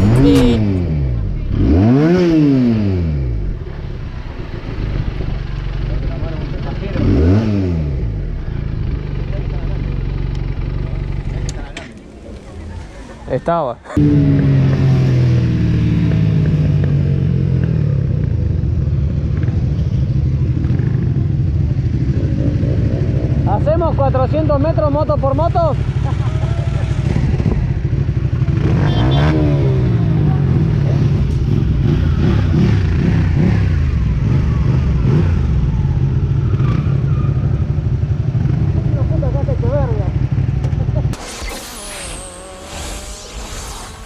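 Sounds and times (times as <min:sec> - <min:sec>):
motorcycle engine and exhaust: 0:00.0 - 0:44.0
motorcycle engine running: 0:03.4 - 0:11.7.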